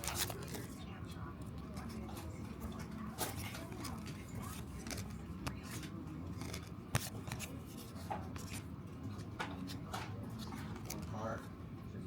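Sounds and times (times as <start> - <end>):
trading cards clicking and rustling: 0.0 - 0.7, 1.7 - 11.3.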